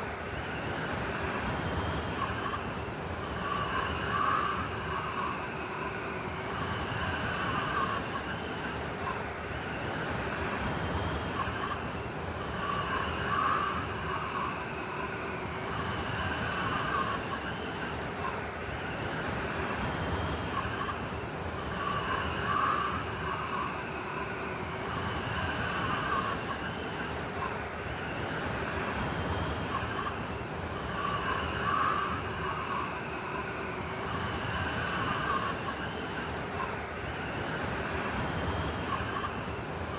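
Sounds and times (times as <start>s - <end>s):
whistling wind tones: 0.0s - 39.9s
blizzard wind howling: 11.3s - 39.9s.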